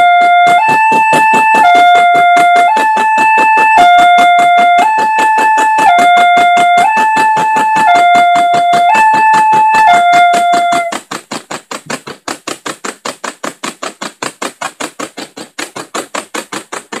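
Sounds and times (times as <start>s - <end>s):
two-note electronic warning tone: 0.0s - 11.0s
rapid even ticking: 0.0s - 17.0s.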